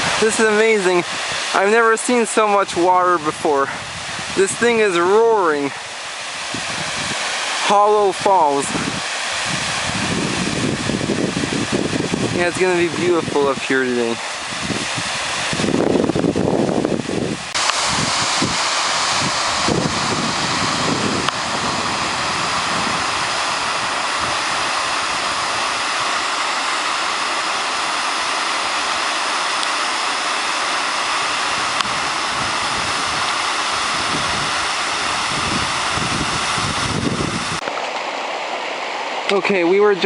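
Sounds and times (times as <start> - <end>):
waterfall roaring: 0.0 - 40.0
wind buffeting microphone: 2.6 - 26.3, 31.1 - 37.6.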